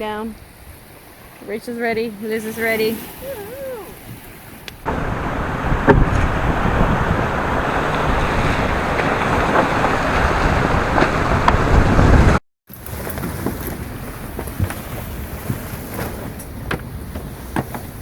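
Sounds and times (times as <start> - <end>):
sea rushing: 0.0 - 18.0
strong wind buffeting microphone: 2.8 - 12.4.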